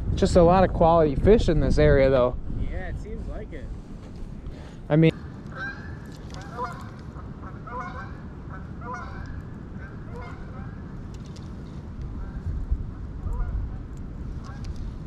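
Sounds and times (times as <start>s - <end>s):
low background rush: 0.0s - 15.0s
geese honking: 5.1s - 10.9s, 13.0s - 13.8s.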